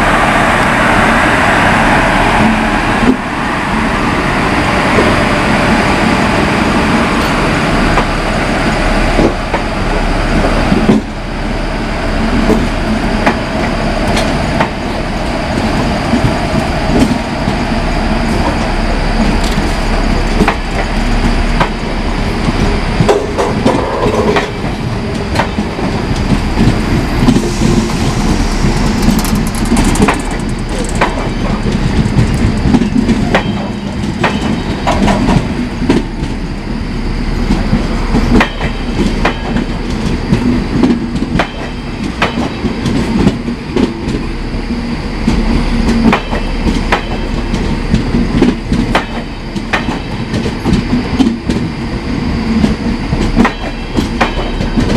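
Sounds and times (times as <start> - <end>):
train wheels clacking over rail joints: 12.4 - 17.6, 18.3 - 36.4, 37.5 - 44.3, 45.2 - 51.8, 52.4 - 54.9.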